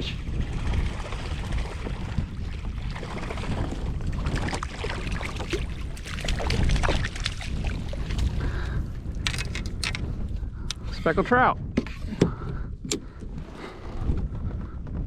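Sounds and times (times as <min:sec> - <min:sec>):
water splashing around kayak: 0:00.0 - 0:10.0
wind buffeting microphone: 0:00.0 - 0:15.0
small clicks and knocks: 0:09.2 - 0:10.0.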